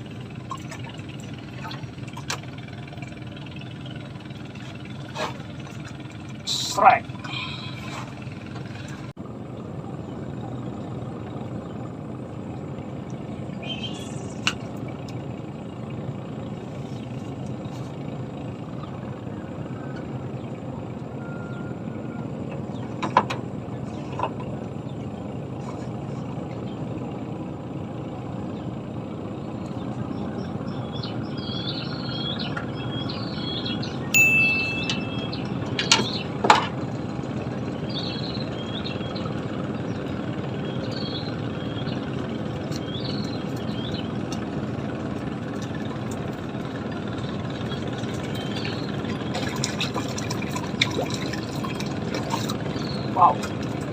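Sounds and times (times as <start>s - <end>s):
birds chirping: 0.2s - 8.9s, 12.7s - 23.0s, 28.0s - 53.9s.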